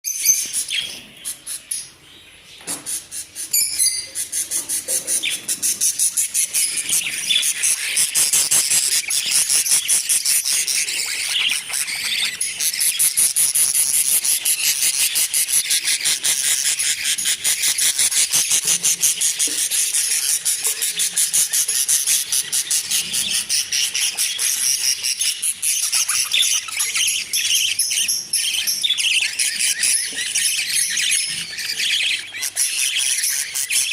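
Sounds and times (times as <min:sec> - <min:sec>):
budgerigars chattering and chirping: 0:00.1 - 0:33.9.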